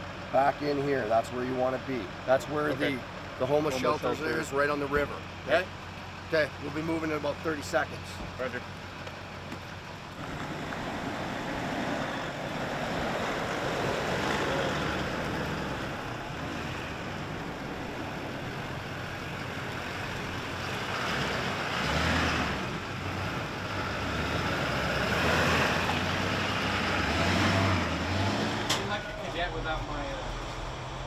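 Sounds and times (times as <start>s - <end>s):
vehicle engine hum: 0.0s - 31.0s
rushing wind or road noise: 8.3s - 31.0s.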